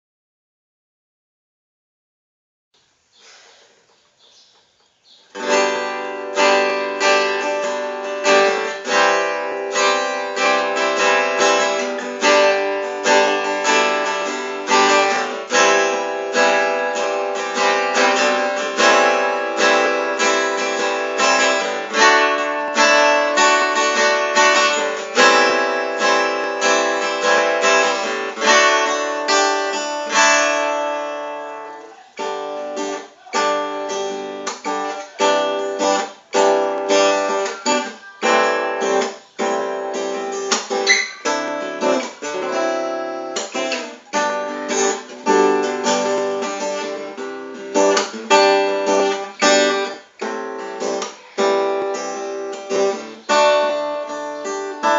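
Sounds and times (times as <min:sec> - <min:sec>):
acoustic guitar strummed and picked: 0:05.1 - 0:54.9.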